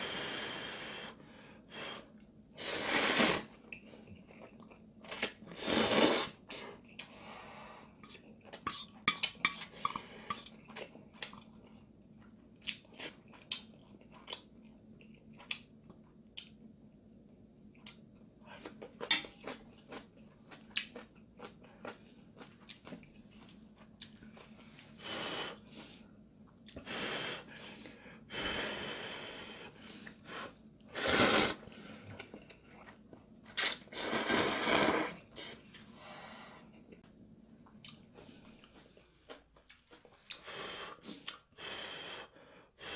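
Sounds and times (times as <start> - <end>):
slurping noodles: 2.6 - 3.6, 5.5 - 6.4, 30.9 - 31.8, 33.6 - 35.4.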